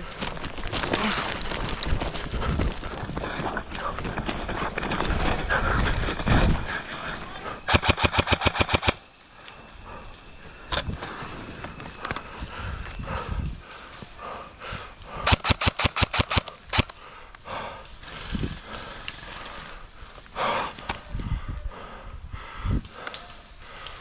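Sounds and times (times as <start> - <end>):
airsoft gun full-auto burst: 7.7 - 9.0, 15.2 - 16.9.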